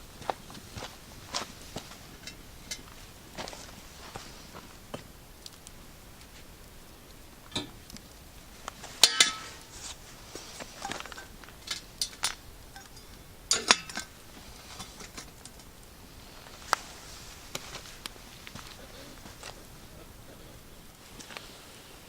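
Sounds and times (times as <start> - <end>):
cookware clinking and clattering: 8.9 - 9.8, 10.8 - 15.4.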